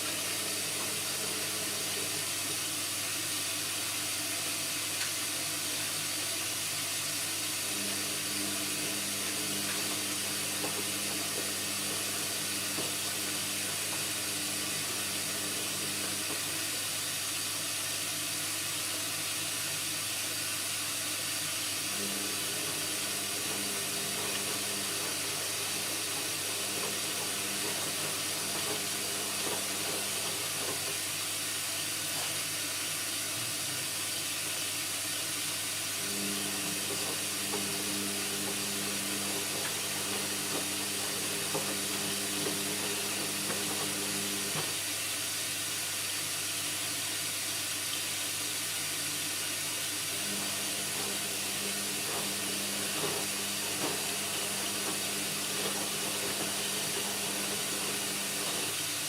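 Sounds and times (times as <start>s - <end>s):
washing machine hum: 0.0s - 59.0s
washing machine water rushing: 0.0s - 59.0s.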